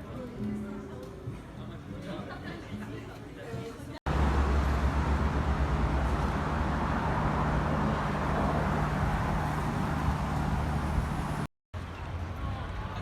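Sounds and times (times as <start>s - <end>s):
vehicle engine hum: 4.1s - 11.5s
street traffic noise: 4.1s - 13.0s.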